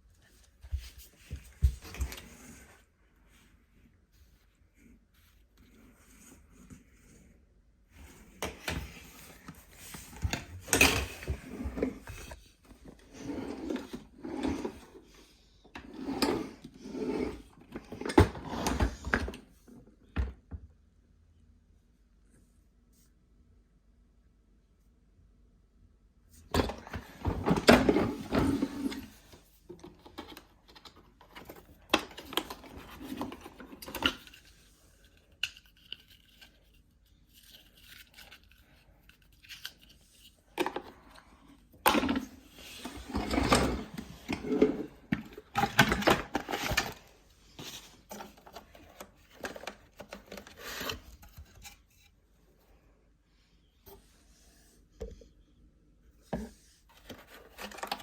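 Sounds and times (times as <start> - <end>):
vacuum cleaner handling noise: 26.5 - 29.3, 41.9 - 51.0.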